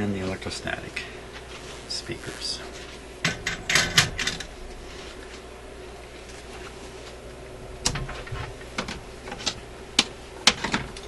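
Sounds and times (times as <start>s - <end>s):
steady low hum: 0.0s - 11.0s
clicks and knocks of handling: 7.8s - 11.0s.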